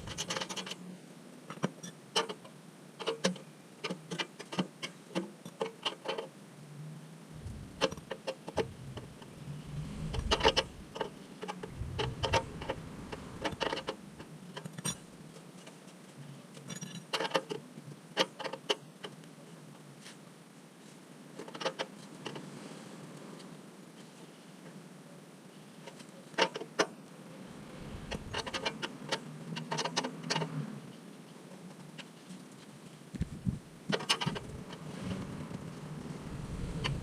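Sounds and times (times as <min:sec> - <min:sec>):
low rumble: 0:07.4 - 0:08.0, 0:08.6 - 0:14.3, 0:27.3 - 0:28.7, 0:34.3 - 0:37.0.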